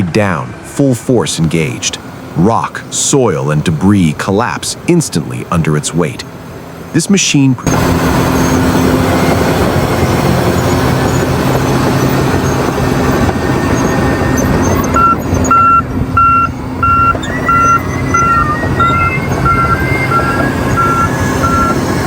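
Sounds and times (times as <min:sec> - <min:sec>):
diesel machine running: 0:00.0 - 0:22.0
backup alarm beeping: 0:07.7 - 0:22.0.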